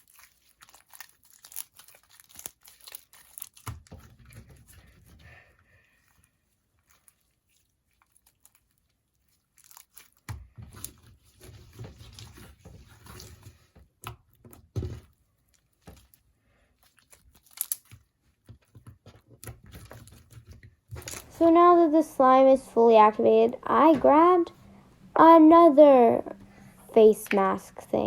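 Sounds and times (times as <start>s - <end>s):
slime clicks and squishes: 0.0s - 4.5s, 6.8s - 11.1s, 16.8s - 21.2s
hands kneading slime: 0.0s - 24.4s.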